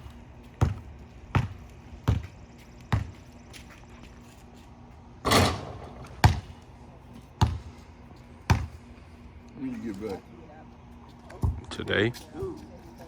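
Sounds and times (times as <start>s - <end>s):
basketball dribbling: 0.0s - 3.3s, 5.3s - 6.6s, 7.4s - 7.8s, 8.5s - 8.8s.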